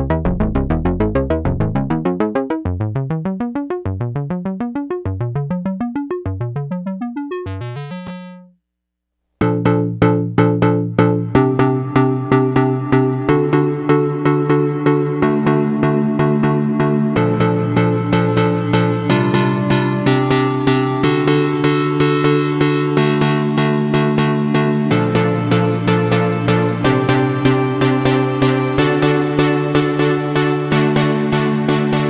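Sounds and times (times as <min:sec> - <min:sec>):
synthesizer fast note sequence: 0:03.3 - 0:08.6
synthesizer chord pulsing: 0:04.5 - 0:08.6, 0:09.4 - 0:32.0.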